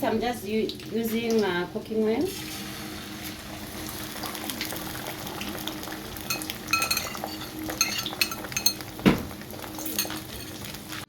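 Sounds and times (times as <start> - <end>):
metal cutlery clinking on a dish: 6.3 - 8.8, 9.8 - 10.7.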